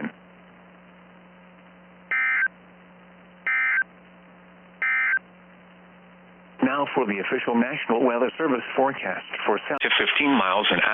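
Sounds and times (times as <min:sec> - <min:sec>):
faint low hum: 0:00.0 - 0:10.9
digital data tone bursts: 0:02.1 - 0:02.5, 0:03.5 - 0:03.9, 0:04.8 - 0:05.2.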